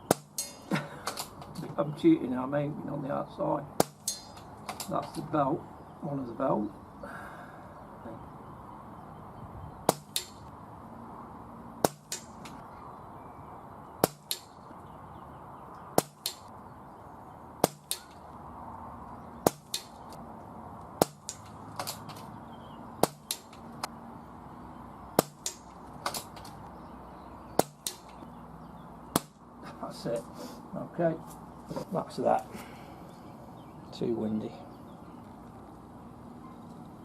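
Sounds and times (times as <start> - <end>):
pellet striking steel target: 0.0 - 0.7, 3.8 - 4.4, 9.9 - 10.4, 11.8 - 12.6, 14.0 - 14.6, 15.9 - 16.5, 17.6 - 18.1, 19.4 - 20.0, 21.0 - 21.5, 23.0 - 23.6, 25.2 - 26.3, 27.6 - 28.1, 29.1 - 29.4
air rifle shots: 3.8 - 4.9, 9.9 - 10.5, 14.0 - 14.6, 16.0 - 16.5, 17.6 - 18.2, 23.0 - 23.6, 25.2 - 26.4, 27.6 - 28.2.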